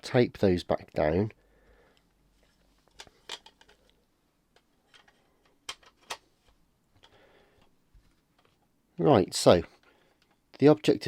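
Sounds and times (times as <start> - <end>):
small plastic parts clicking: 2.8 - 4.0, 4.6 - 6.2.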